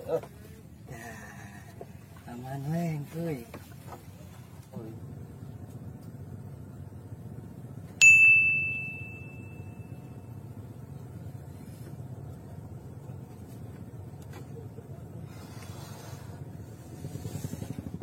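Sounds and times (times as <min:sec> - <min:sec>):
low background rumble: 0:00.0 - 0:18.0
small metal bell ding: 0:08.0 - 0:10.3.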